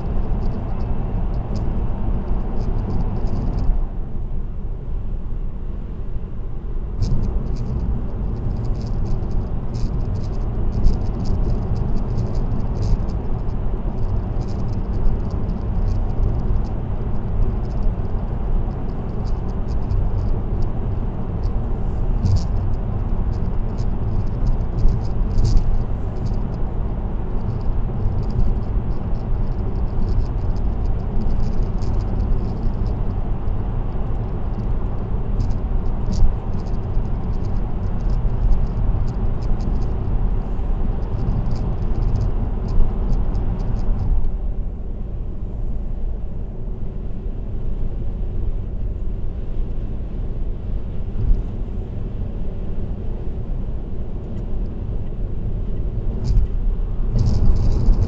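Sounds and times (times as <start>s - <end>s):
tyre and wind rumble: 5.6s - 58.0s
high-pitched ticking rattle: 57.2s - 58.0s.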